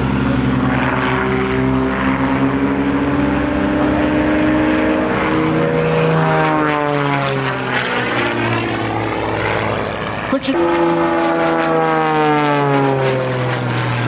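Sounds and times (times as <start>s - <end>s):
propeller airplane engine drone: 0.0s - 14.0s.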